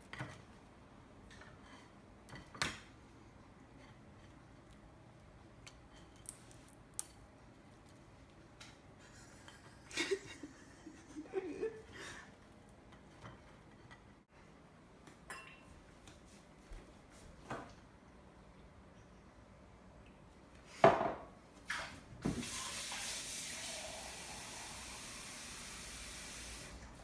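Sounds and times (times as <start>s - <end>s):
dishes and cutlery clinking: 15.3s - 15.8s.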